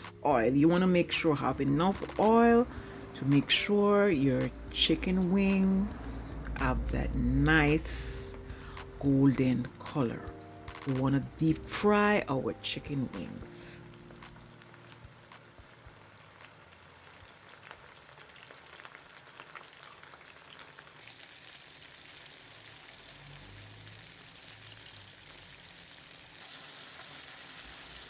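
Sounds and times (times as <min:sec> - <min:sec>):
chicken deep-frying in oil: 0:12.6 - 0:28.0.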